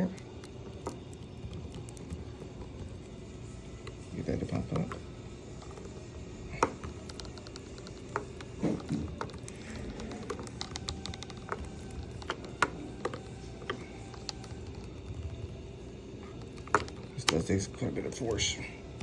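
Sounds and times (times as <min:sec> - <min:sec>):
screwdriver prying at plastic: 0:00.0 - 0:03.2, 0:06.6 - 0:15.6, 0:16.2 - 0:17.6.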